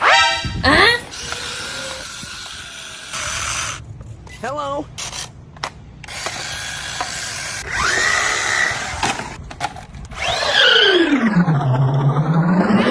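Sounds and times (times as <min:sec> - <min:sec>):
small electric motor whining: 0:01.0 - 0:03.8, 0:06.0 - 0:09.4, 0:10.1 - 0:11.2.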